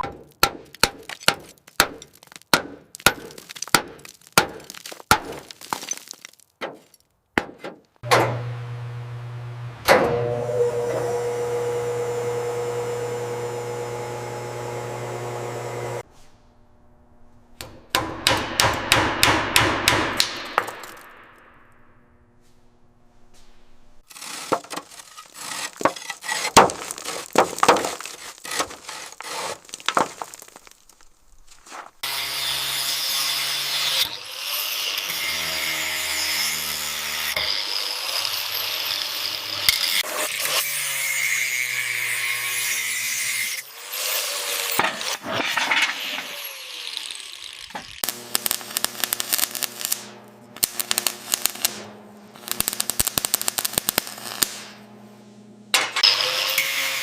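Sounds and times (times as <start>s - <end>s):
sharp knocks and scrapes: 0.0s - 8.3s, 22.4s - 32.0s, 44.7s - 46.3s
power tool running: 8.0s - 16.0s, 45.9s - 55.0s.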